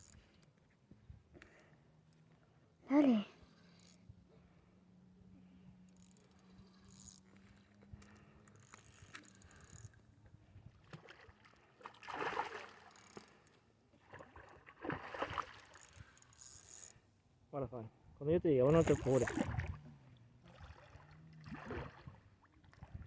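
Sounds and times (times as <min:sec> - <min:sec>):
water lapping and splashing: 0:10.6 - 0:16.2, 0:18.7 - 0:23.0.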